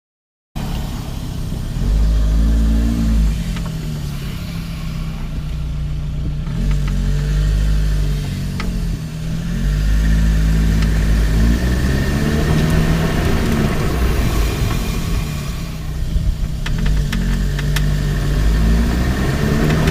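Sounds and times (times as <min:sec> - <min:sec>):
car engine: 0:00.6 - 0:19.9
road noise: 0:00.6 - 0:19.9
sharp suspension clicks: 0:16.4 - 0:18.3.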